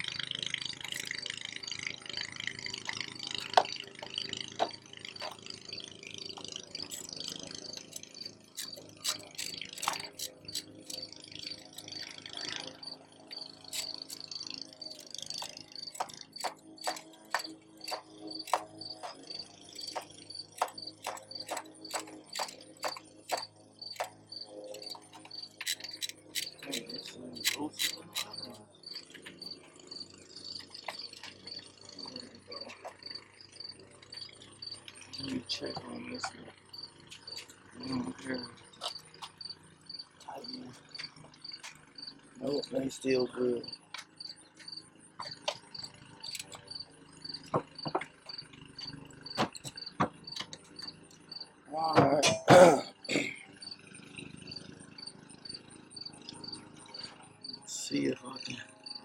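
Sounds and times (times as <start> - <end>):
crickets chirping: 0.0 - 59.0
sharp clicks: 6.4 - 12.2, 13.3 - 29.5, 43.9 - 46.8.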